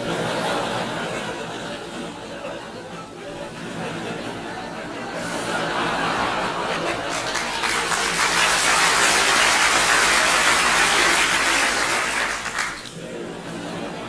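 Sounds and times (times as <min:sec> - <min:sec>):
audience applause: 0:06.3 - 0:13.0.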